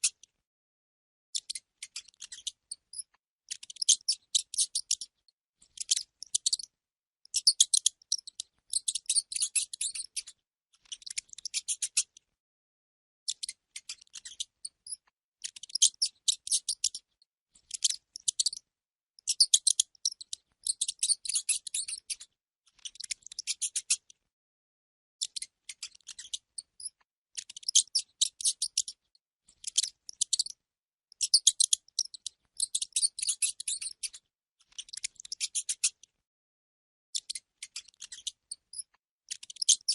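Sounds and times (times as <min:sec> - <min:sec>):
rodent chittering: 0:01.4 - 0:05.1, 0:05.8 - 0:06.7, 0:07.3 - 0:12.1, 0:13.3 - 0:18.6, 0:19.2 - 0:24.0, 0:25.2 - 0:29.0, 0:29.6 - 0:30.6, 0:31.2 - 0:36.0, 0:37.2 - 0:39.9.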